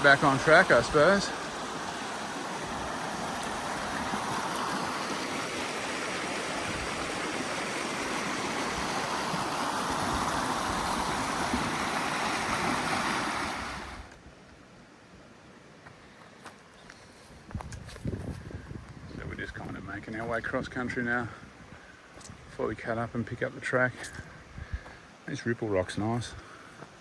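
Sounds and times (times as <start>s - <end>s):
water rushing over rocks: 0.0s - 14.1s.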